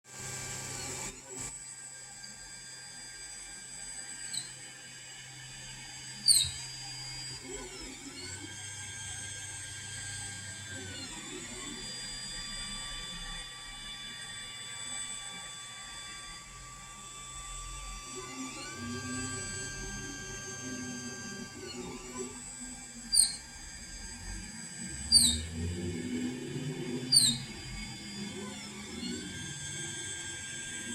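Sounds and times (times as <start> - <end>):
stepper motors whining: 0.2 - 30.9
sharp high squeak: 4.3 - 4.5, 6.2 - 6.6, 23.1 - 23.5, 25.1 - 25.5, 27.1 - 27.6
printer axis squeaking: 23.1 - 23.4.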